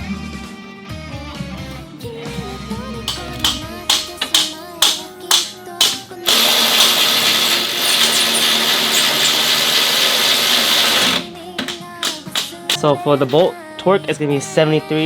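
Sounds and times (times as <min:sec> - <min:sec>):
background music: 0:00.0 - 0:07.8, 0:09.8 - 0:15.0
handheld power tool running: 0:03.1 - 0:12.8.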